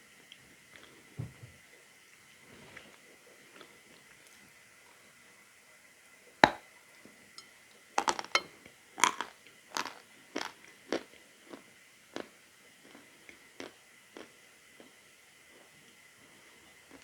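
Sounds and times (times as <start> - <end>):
crunchy chewing: 8.0 - 17.0.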